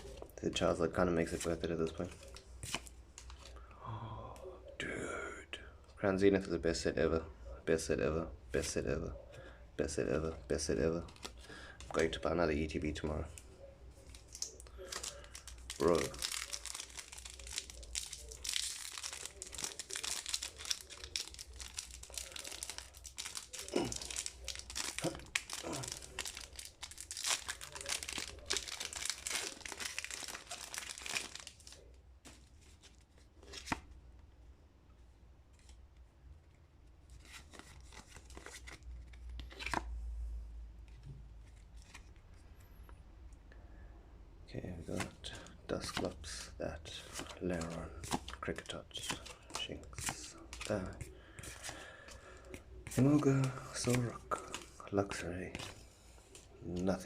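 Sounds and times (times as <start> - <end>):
foil wrappers tearing and crinkling: 14.2 - 31.8.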